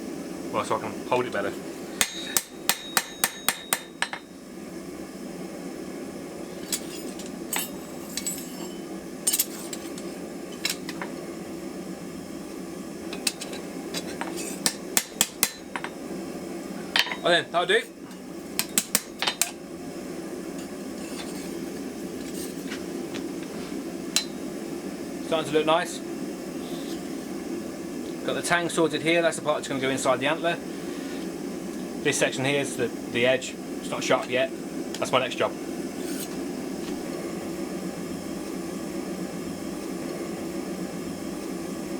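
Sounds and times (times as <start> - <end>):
forge running steadily: 0.0 - 41.9
steady low hum: 0.0 - 41.9
metal tools clinking on anvil: 2.0 - 4.2, 6.7 - 10.0, 17.0 - 17.2.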